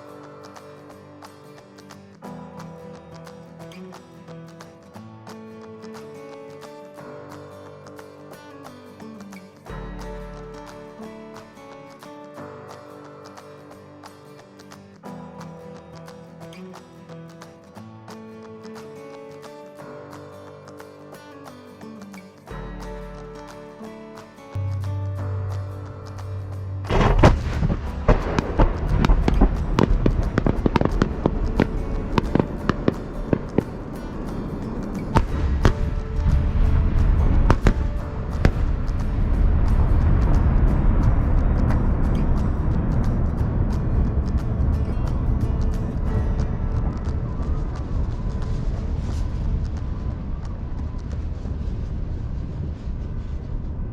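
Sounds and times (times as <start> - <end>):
steady low rumble: 25.6 - 33.9, 35.2 - 53.9
fireworks bangs and crackles: 26.9 - 53.9.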